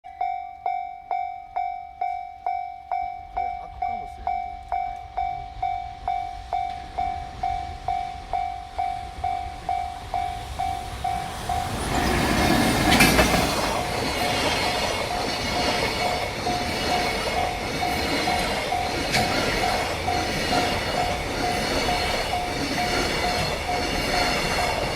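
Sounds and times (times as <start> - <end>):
level crossing bell dinging: 0.0 - 11.8
freight train rumbling past: 2.9 - 24.9.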